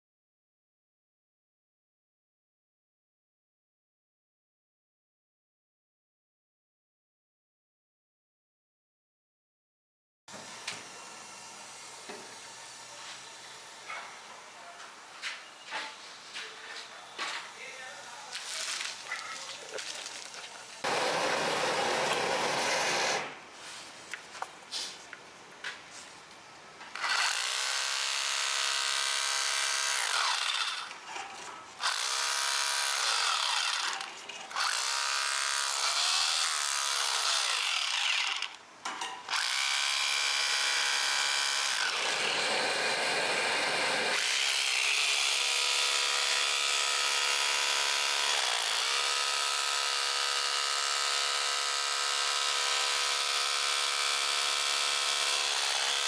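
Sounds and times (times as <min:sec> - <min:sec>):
small electric motor running: 0:17.5 - 0:23.2, 0:27.0 - 0:31.1, 0:31.8 - 0:38.6, 0:39.3 - 0:56.0.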